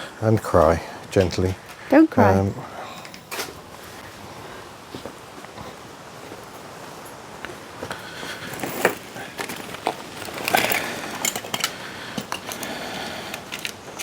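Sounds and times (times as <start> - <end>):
small objects clicking and rustling: 8.3 - 14.0.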